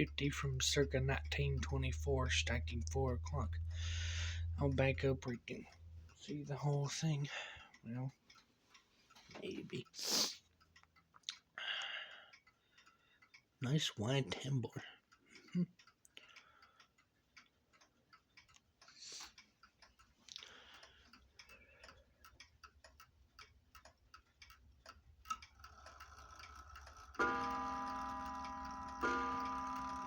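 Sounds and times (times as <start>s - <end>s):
clock ticking: 0.0s - 30.0s
clock striking: 25.6s - 30.0s.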